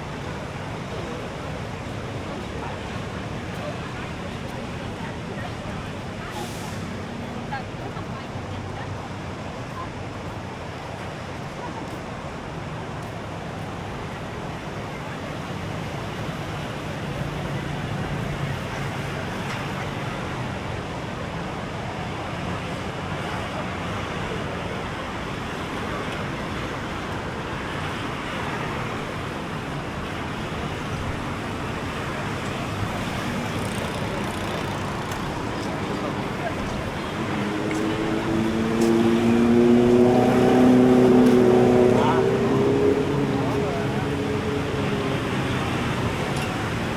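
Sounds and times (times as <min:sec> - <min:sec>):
road traffic: 0:00.0 - 0:46.9
breaking surf: 0:10.3 - 0:46.9
passing vehicle engine hum: 0:23.8 - 0:46.9.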